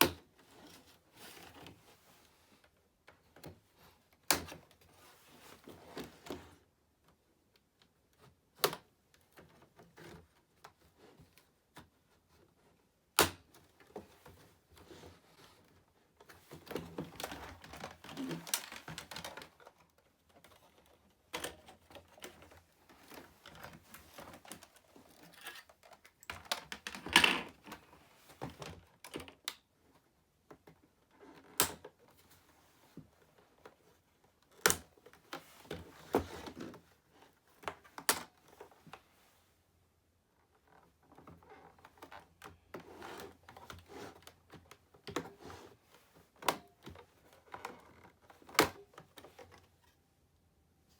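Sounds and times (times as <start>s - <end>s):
plastic parts clicking and knocking: 16.2s - 29.7s
plastic parts clattering: 16.4s - 27.6s.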